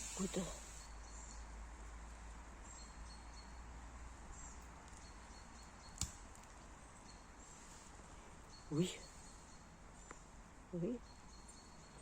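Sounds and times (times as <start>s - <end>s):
distant birds chirping: 2.6s - 12.0s.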